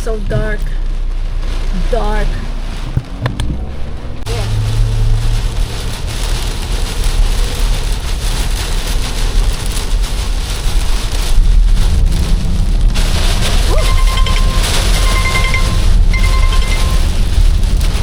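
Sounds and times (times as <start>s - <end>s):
heavy rain on a car: 0.0s - 18.0s
road rumble: 0.0s - 18.0s.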